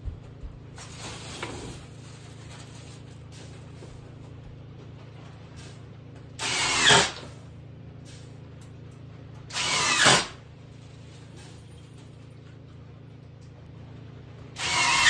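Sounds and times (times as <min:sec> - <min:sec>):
steady low hum: 0:00.0 - 0:15.0
power drill bursts: 0:06.4 - 0:07.3, 0:09.5 - 0:10.4, 0:14.6 - 0:15.0.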